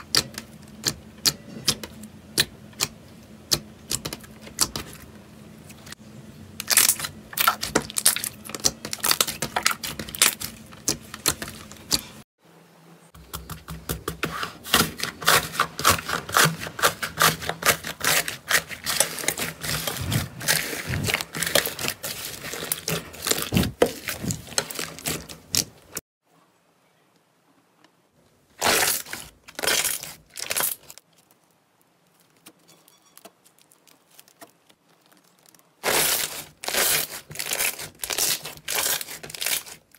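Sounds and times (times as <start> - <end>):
slime crackling and popping: 28.6 - 32.6, 33.2 - 39.9.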